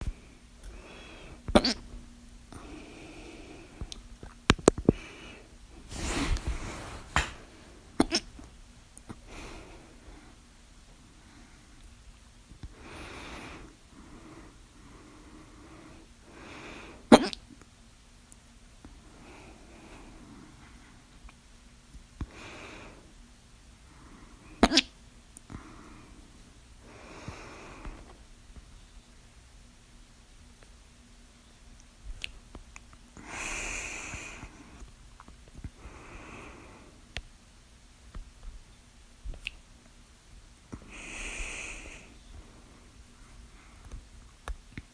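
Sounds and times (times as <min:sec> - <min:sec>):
noisy breath: 0:00.0 - 0:08.5, 0:09.1 - 0:11.8, 0:12.6 - 0:17.1, 0:18.9 - 0:21.2, 0:22.2 - 0:23.2, 0:23.8 - 0:24.7, 0:25.5 - 0:28.2, 0:33.2 - 0:34.9, 0:35.6 - 0:37.1, 0:40.7 - 0:44.2
person hiccuping: 0:01.5 - 0:01.8, 0:08.0 - 0:08.3, 0:17.1 - 0:17.4, 0:24.6 - 0:24.9.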